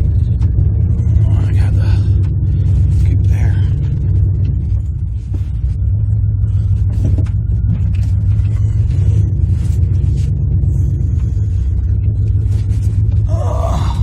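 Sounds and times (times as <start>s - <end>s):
vehicle engine humming: 0.0s - 14.0s.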